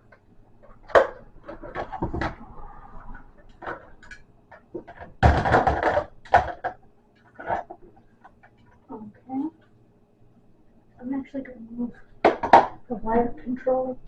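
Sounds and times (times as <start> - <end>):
plastic controllers knocking and clicking: 0.0 - 2.4, 3.5 - 8.8, 12.2 - 12.8
plastic clatter: 0.1 - 2.4, 3.5 - 8.7, 12.2 - 12.8.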